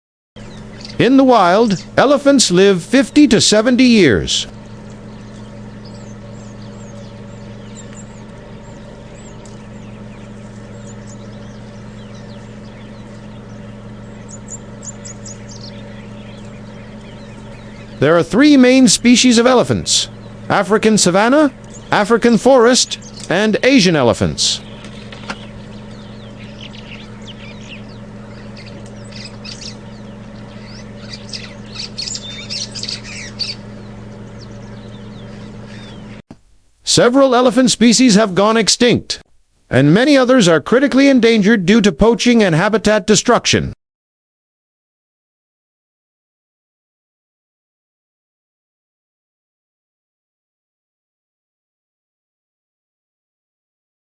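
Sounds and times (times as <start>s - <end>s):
high bird-like chirps: 0.4s - 2.1s, 24.6s - 36.2s
birds chirping and squawking: 0.4s - 36.2s
steady low hum: 0.4s - 43.8s.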